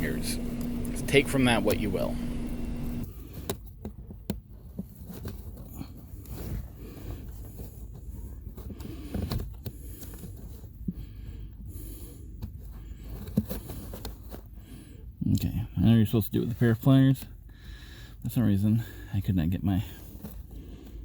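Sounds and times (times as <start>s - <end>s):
man breathing heavily: 8.7s - 13.3s, 17.4s - 18.2s, 19.8s - 21.0s.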